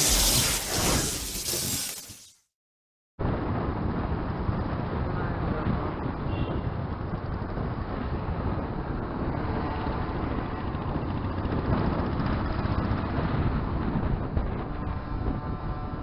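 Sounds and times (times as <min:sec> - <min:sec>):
motorcycle engine and road noise: 0:03.7 - 0:16.0.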